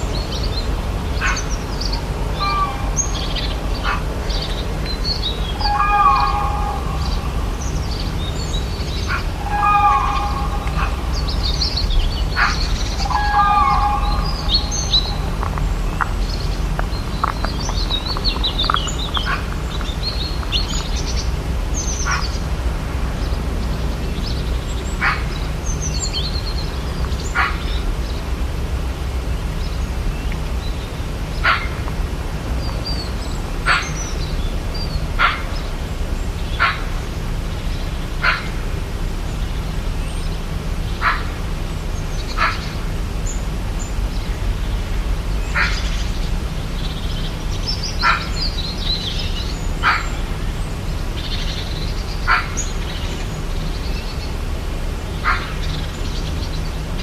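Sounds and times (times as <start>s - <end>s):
low bird calls: 0.0s - 22.6s, 23.2s - 28.2s, 29.2s - 54.5s, 55.1s - 57.0s
birds chirping and calling: 0.0s - 28.4s, 29.0s - 57.0s
steady low rumble: 0.0s - 57.0s
sharp bird call notes: 5.2s - 8.1s, 8.9s - 15.4s.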